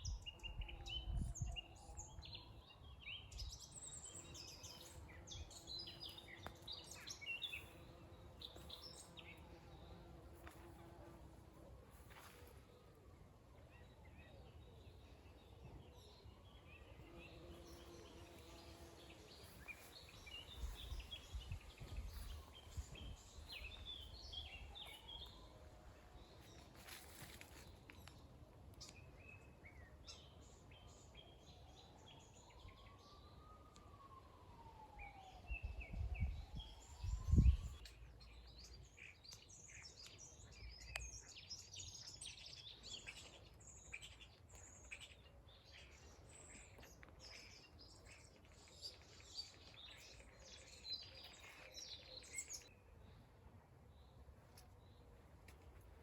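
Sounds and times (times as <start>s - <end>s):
songbirds chirping and singing: 0.0s - 10.8s, 13.6s - 25.5s, 35.1s - 53.3s.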